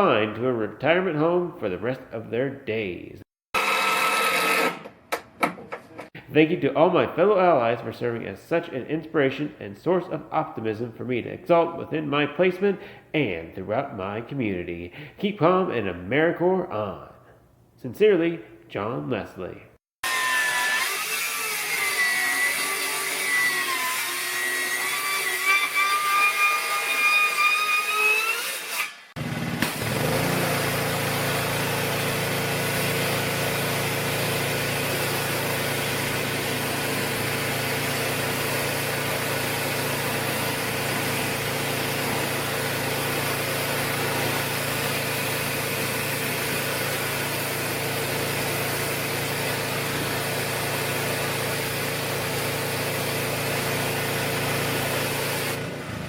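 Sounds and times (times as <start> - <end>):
power tool whining: 3.6 - 4.9, 20.0 - 56.0
small engine running: 29.2 - 56.0.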